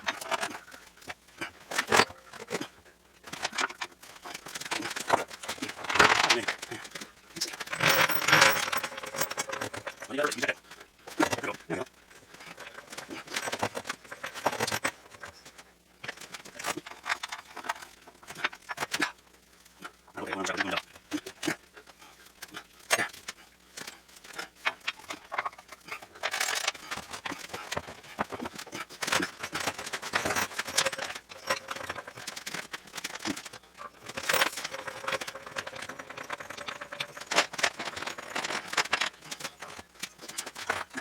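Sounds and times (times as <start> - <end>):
metallic clinks and rattles: 3.3 - 10.5, 12.0 - 19.1, 23.8 - 41.0.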